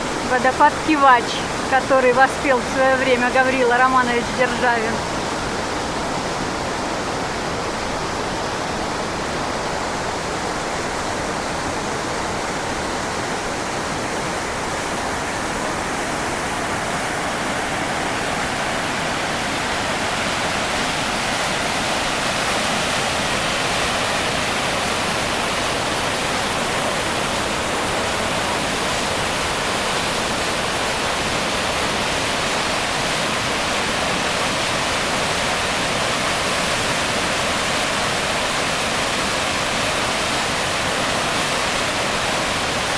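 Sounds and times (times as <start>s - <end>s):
waterfall rushing over rock: 0.0s - 42.9s.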